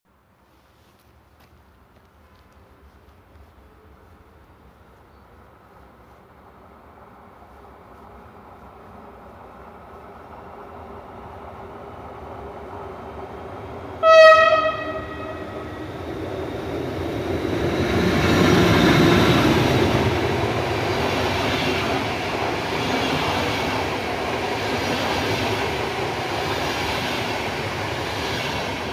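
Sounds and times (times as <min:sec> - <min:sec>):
train running noise: 0:00.8 - 0:28.9
locomotive horn blast: 0:14.0 - 0:15.9.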